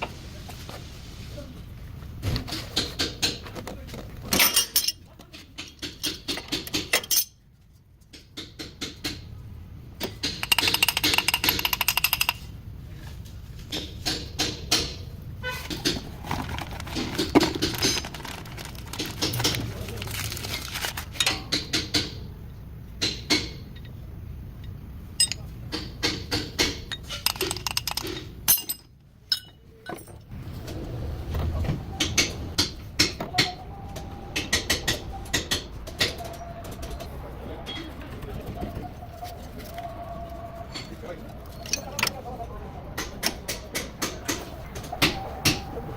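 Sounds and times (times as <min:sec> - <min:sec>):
metal tools clinking: 0:04.3 - 0:05.1, 0:06.9 - 0:07.4, 0:10.4 - 0:12.5, 0:25.2 - 0:25.6, 0:26.9 - 0:30.3, 0:41.5 - 0:42.2.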